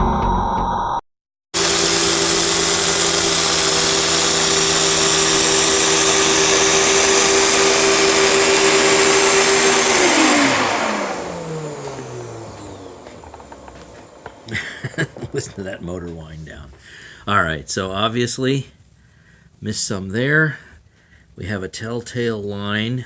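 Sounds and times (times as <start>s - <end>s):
vacuum cleaner motor whining: 1.6s - 16.9s.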